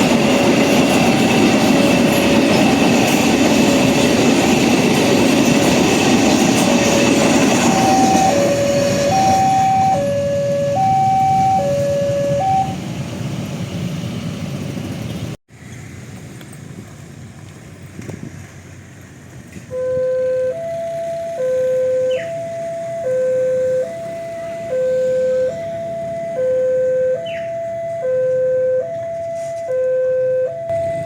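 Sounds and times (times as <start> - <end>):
passing train: 0.0 - 31.0
level crossing two-note alarm: 7.6 - 12.8, 19.8 - 31.0.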